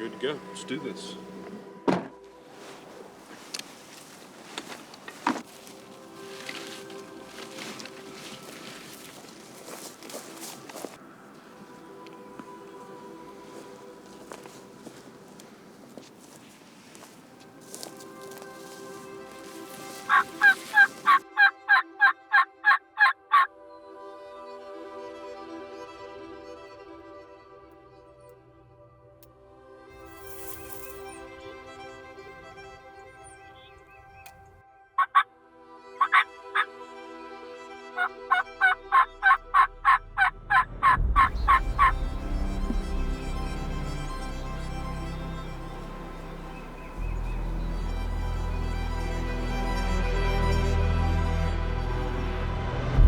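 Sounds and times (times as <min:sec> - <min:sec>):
low music: 0:00.0 - 0:53.0
turkey yelps: 0:20.1 - 0:23.5, 0:35.0 - 0:35.2, 0:36.0 - 0:36.7, 0:38.0 - 0:41.9.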